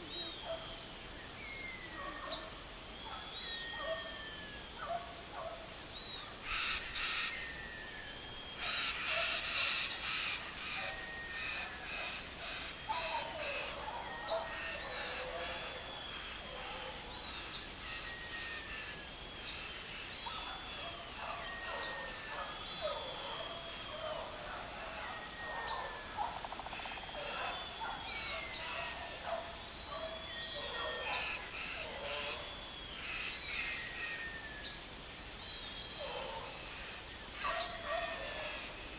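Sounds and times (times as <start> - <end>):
birds chirping: 0.0 - 34.0.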